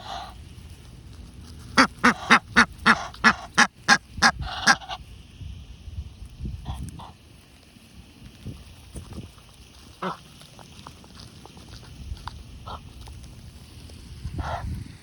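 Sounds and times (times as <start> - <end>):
goose honking: 1.8 - 5.0.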